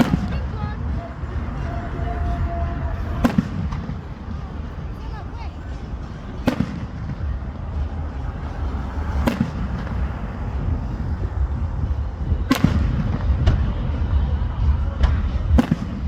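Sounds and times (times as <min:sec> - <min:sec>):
fireworks bangs: 0:00.0 - 0:16.0
low rumble of explosions: 0:00.0 - 0:16.0.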